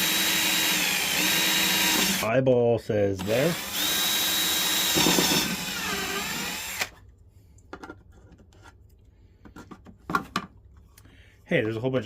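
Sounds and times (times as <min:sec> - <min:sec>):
power drill drilling: 0:00.0 - 0:02.3, 0:03.2 - 0:07.0.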